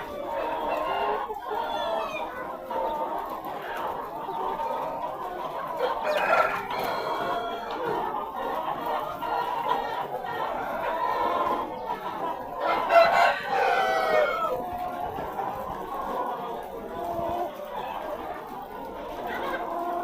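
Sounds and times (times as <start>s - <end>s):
chickens clucking: 0.0s - 20.0s
loud chicken call: 5.8s - 7.8s, 12.6s - 14.6s.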